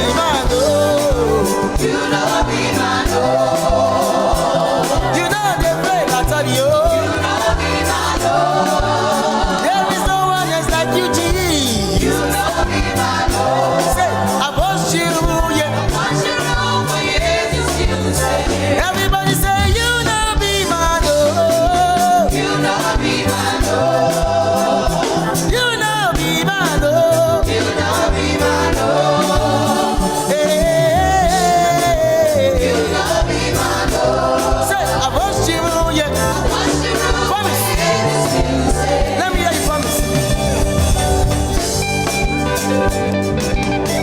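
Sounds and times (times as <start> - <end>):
person singing lead: 0.0 - 2.3
choir voices: 0.0 - 41.9
band beat and bass: 0.0 - 44.0.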